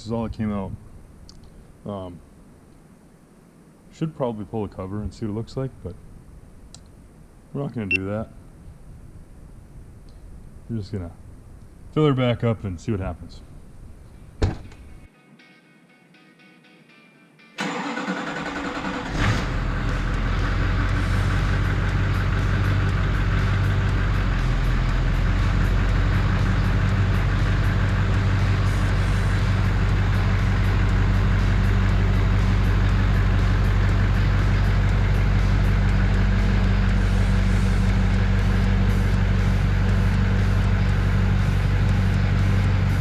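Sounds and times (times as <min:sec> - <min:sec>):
diesel engine starting and idling: 0:17.6 - 0:43.0.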